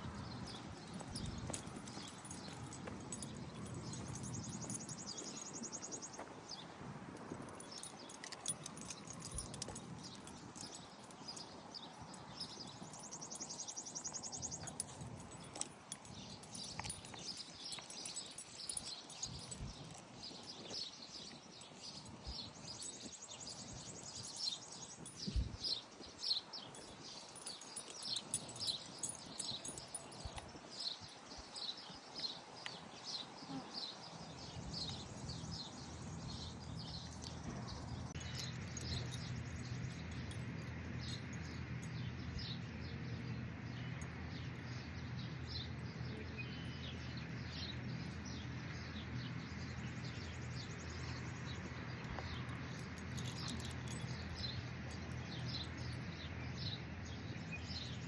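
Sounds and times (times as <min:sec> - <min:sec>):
birds chirping: 0:00.0 - 0:58.0.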